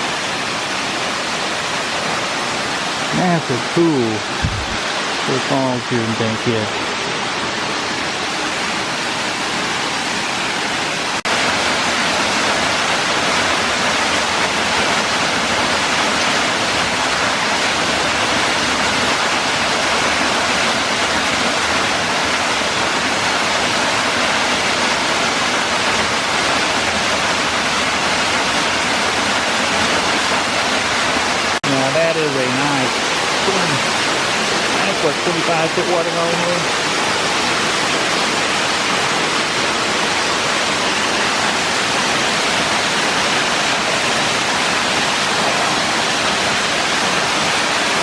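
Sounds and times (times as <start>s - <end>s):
waterfall rushing into pool: 0.0s - 48.0s.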